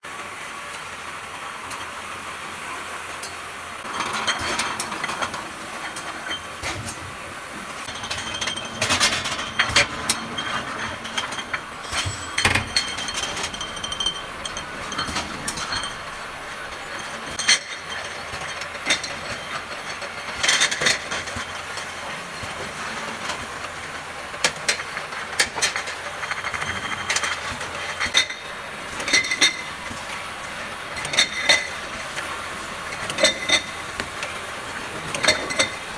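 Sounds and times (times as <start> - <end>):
machinery running: 7.9 - 17.4
glass bottles clinking: 7.9 - 21.6, 26.3 - 35.9.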